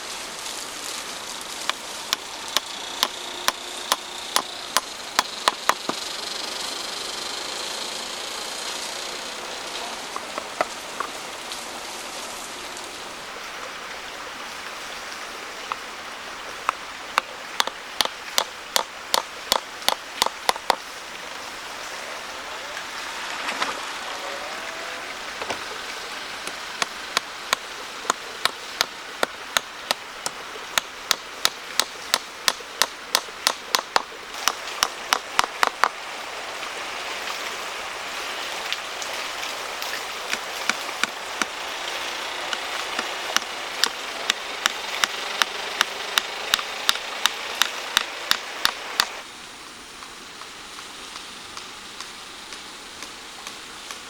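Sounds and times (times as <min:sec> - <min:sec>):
steady hiss: 0:00.0 - 0:54.0
tool knocking on wood: 0:16.7 - 0:20.8, 0:27.5 - 0:35.9.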